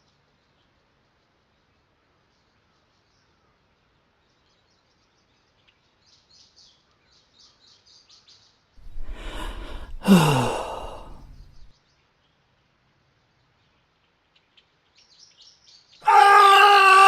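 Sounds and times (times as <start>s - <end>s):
loud falling sigh: 8.8s - 11.7s, 16.0s - 17.0s.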